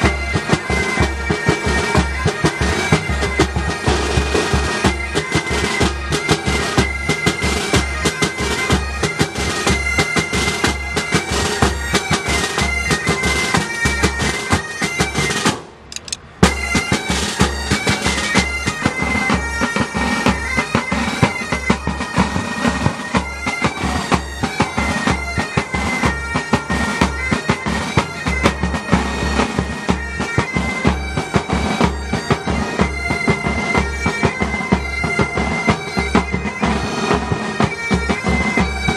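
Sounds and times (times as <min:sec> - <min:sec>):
bagpipes playing: 0:00.0 - 0:15.6, 0:16.4 - 0:38.9
drum beats: 0:00.0 - 0:38.9
sharp click: 0:15.9 - 0:16.3.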